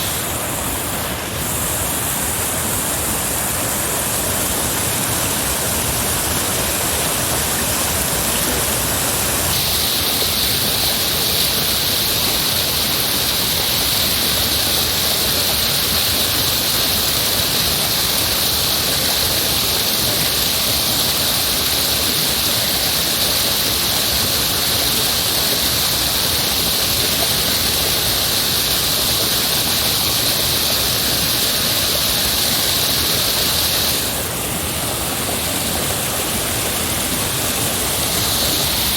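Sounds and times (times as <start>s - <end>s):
heavy rushing water: 0.0s - 38.9s.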